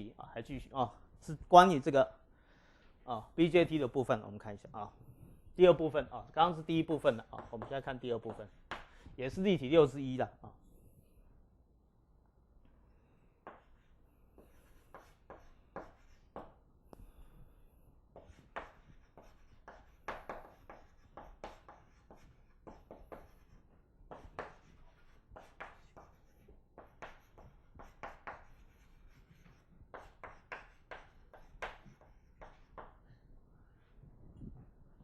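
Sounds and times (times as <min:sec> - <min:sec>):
pen scratching on paper: 0:13.5 - 0:16.5, 0:18.2 - 0:32.9.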